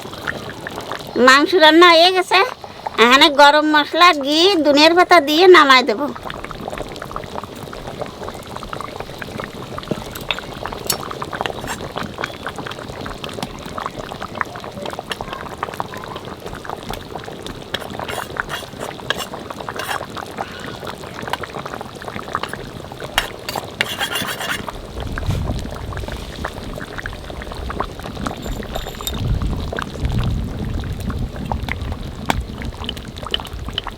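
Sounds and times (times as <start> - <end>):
curry bubbling in a pot: 0.0 - 33.9
utensil clinking against pot: 9.9 - 12.0, 17.7 - 20.1, 22.4 - 24.7, 28.2 - 29.2.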